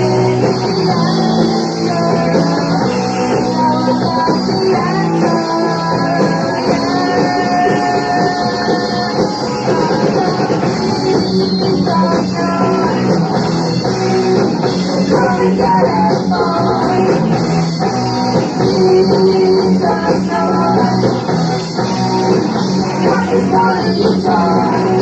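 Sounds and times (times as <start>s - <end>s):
bass: 0.0s - 25.0s
drum kit: 0.0s - 25.0s
electric guitars: 0.0s - 25.0s.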